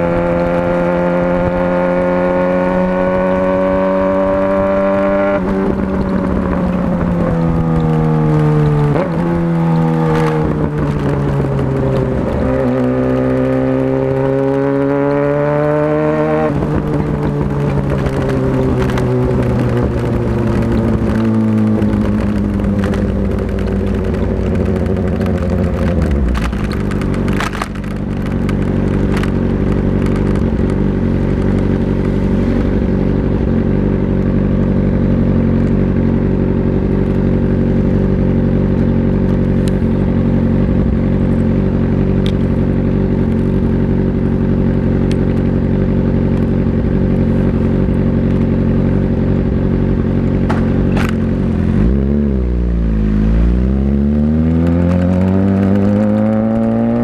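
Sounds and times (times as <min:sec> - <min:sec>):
motorcycle engine accelerating: 0:00.0 - 0:57.0.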